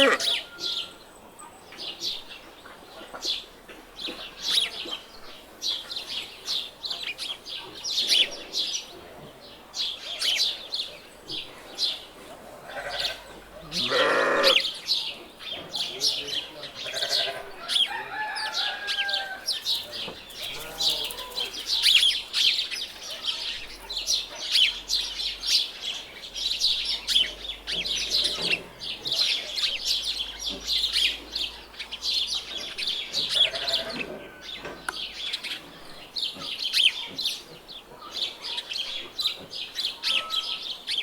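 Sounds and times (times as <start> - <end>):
small birds chirping: 19.5 - 41.0
chickens clucking: 25.9 - 40.9.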